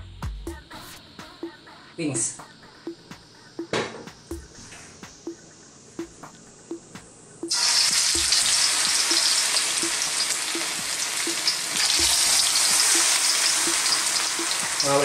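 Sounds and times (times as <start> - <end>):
chicken frying in hot oil: 7.5 - 15.0.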